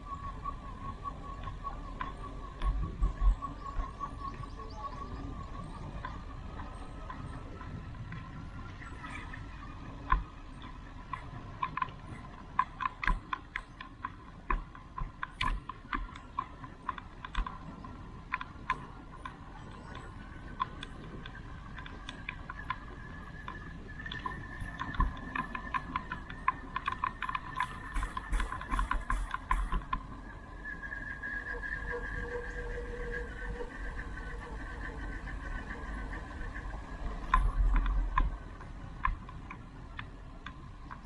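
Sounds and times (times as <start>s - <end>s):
thin steady whine: 0.0s - 41.0s
bicycle clicks and knocks: 5.6s - 30.3s, 37.0s - 41.0s.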